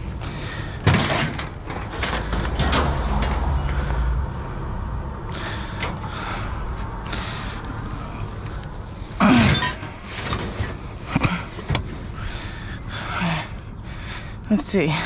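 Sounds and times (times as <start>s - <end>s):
scrap metal clinking and clattering: 7.1s - 12.1s.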